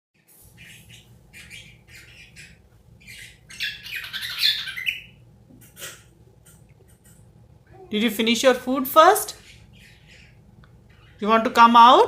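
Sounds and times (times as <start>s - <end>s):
cockatiels chirping and squawking: 0.4s - 5.2s, 9.3s - 11.2s.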